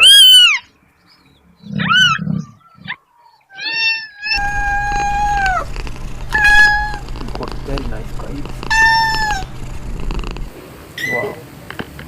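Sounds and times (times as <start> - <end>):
cat meowing: 3.6 - 10.5.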